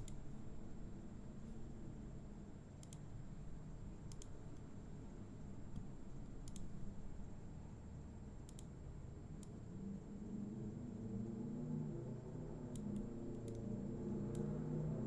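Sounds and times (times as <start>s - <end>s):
computer mouse clicking: 0.0s - 0.2s, 2.8s - 3.0s, 4.1s - 4.7s, 5.7s - 6.8s, 8.5s - 8.7s, 12.7s - 14.6s
low room hum: 0.0s - 15.0s.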